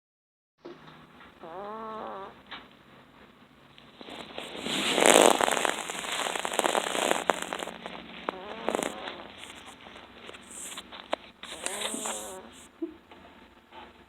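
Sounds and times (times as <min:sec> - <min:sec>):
crackly snoring snorts: 0:01.4 - 0:02.4, 0:04.0 - 0:12.7.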